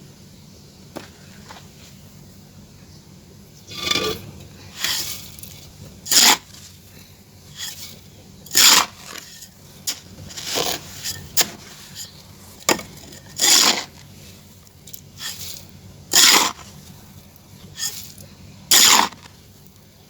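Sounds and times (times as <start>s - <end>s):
dry clay crunching: 3.7s - 17.0s, 17.6s - 19.4s.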